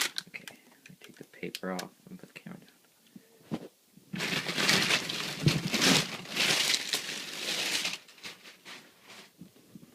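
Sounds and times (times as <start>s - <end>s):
packing paper crumpled by hand: 4.2s - 9.4s.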